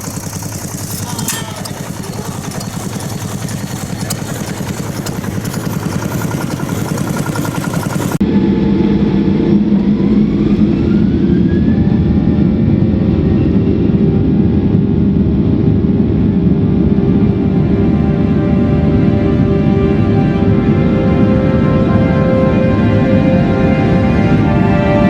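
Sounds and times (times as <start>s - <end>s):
old engine running: 0.0s - 8.2s
droning music with rising tone: 0.0s - 25.0s.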